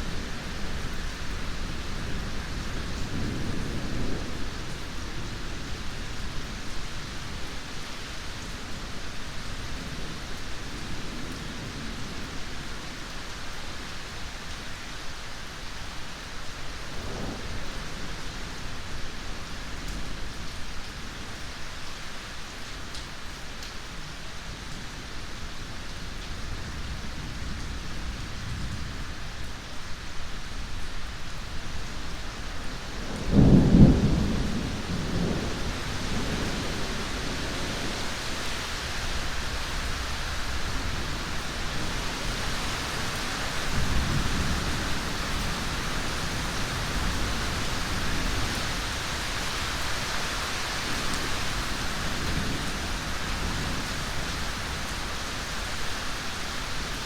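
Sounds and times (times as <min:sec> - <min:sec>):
heavy rain: 0:00.0 - 0:57.0
thunder clap and rumble: 0:32.8 - 0:38.1.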